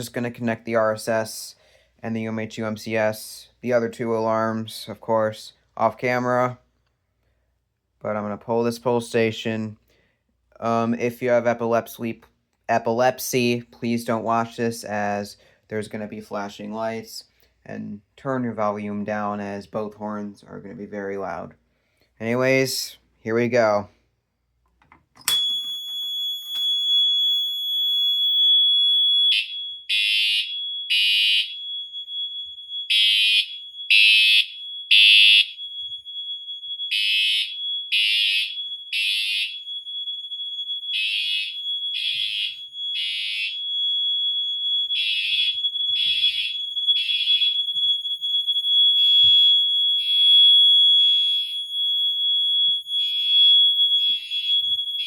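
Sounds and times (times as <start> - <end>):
fire alarm horn blasts: 26.3 - 55.0
high-pitched fire alarm horn: 26.5 - 55.0.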